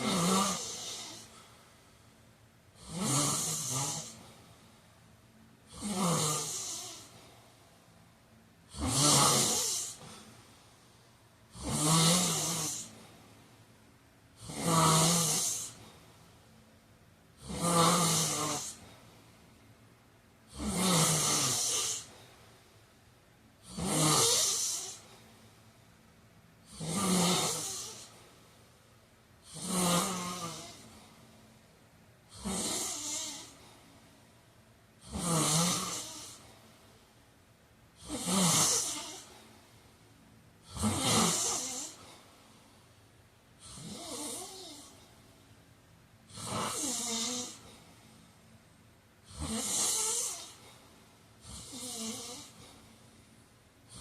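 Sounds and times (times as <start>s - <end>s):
man snoring: 0.0s - 1.5s, 2.8s - 4.4s, 5.7s - 7.3s, 8.7s - 10.3s, 11.5s - 13.1s, 14.4s - 15.9s, 17.4s - 19.0s, 20.5s - 22.2s, 23.6s - 25.1s, 26.7s - 28.2s, 29.4s - 31.1s, 32.3s - 33.6s, 35.0s - 36.5s, 38.0s - 39.4s, 40.6s - 42.2s, 43.6s - 45.0s, 46.3s - 47.8s, 49.3s - 50.7s, 51.4s - 52.8s.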